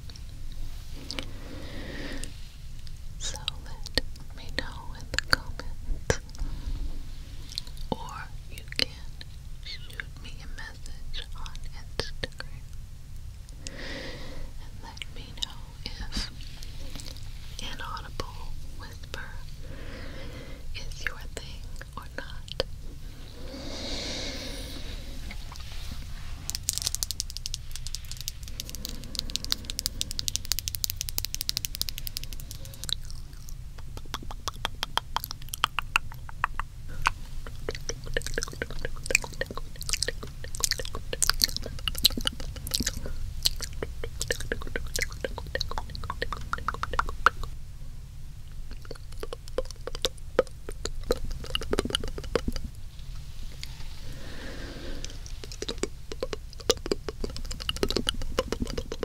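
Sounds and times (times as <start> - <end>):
wet mouth clicks and smacks: 1.0 - 1.3, 7.5 - 8.2, 14.9 - 17.9, 26.4 - 47.6, 48.5 - 52.8, 54.9 - 59.0.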